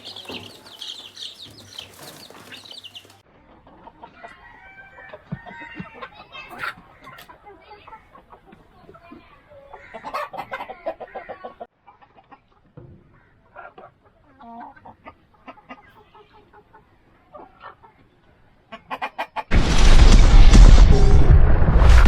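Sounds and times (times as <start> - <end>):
chickens clucking: 0.0 - 19.5
loud dense sound: 19.5 - 22.0.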